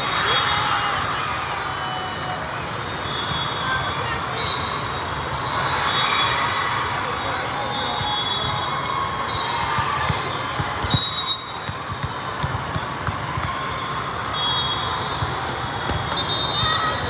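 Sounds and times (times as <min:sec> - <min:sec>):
murmur of gym hall: 0:00.0 - 0:17.0
volleyballs bouncing and struck: 0:08.4 - 0:13.8, 0:15.2 - 0:17.0
shoe squeal: 0:16.1 - 0:17.0.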